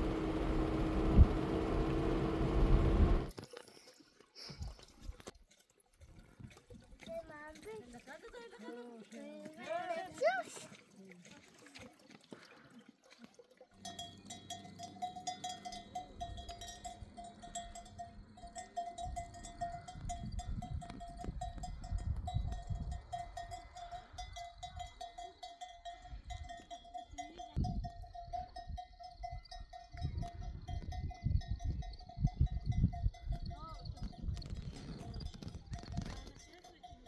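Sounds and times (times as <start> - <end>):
livestock bells ringing: 0.0 - 3.3, 13.8 - 34.3, 35.8 - 37.0
low rumbling noise: 0.0 - 3.3.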